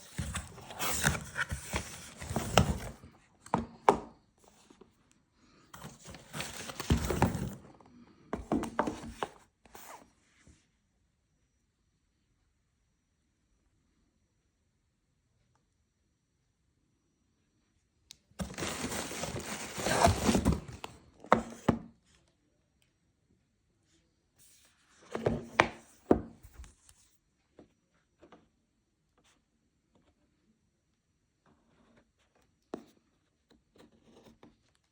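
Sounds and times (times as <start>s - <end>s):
packaging rustling and crinkling: 0.0s - 3.0s, 5.8s - 7.6s, 18.4s - 21.6s.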